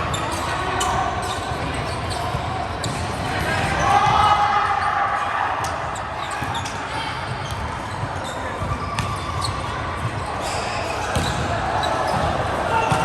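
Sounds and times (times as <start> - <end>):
volleyball hits: 11.0 - 13.0.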